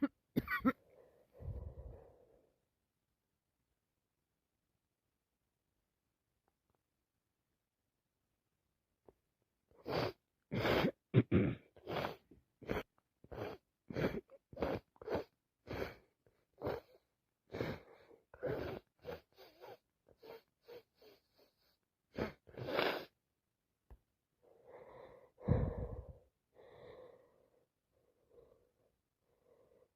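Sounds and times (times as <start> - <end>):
woman coughing and sneezing: 0.0 - 0.8.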